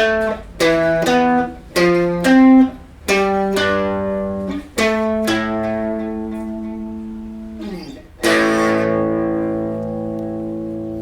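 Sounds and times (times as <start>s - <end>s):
electric guitar power chords: 0.0s - 11.0s.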